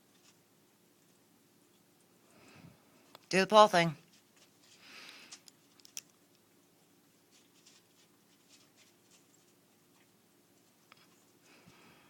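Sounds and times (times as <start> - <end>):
cats eating from a dish: 4.0 - 11.8.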